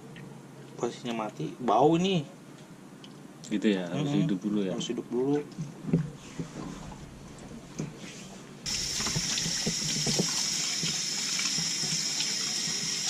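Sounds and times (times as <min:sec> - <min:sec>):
tap water running into sink: 0:08.7 - 0:13.0.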